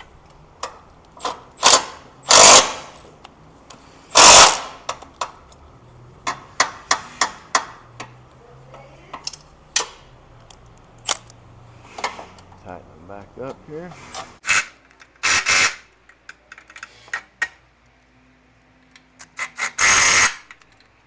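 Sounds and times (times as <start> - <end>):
power tool running nuts down: 1.6 - 2.9, 4.1 - 4.8, 14.4 - 15.8, 19.2 - 20.7.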